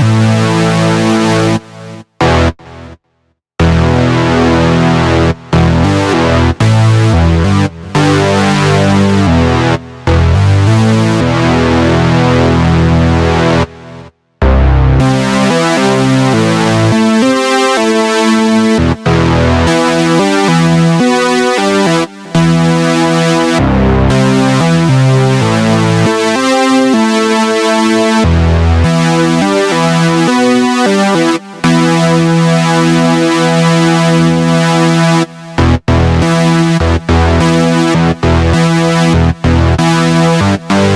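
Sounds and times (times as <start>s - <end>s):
synthesizer chords: 0.0s - 3.0s, 3.6s - 40.9s
low bass line: 3.6s - 17.2s, 35.6s - 40.9s.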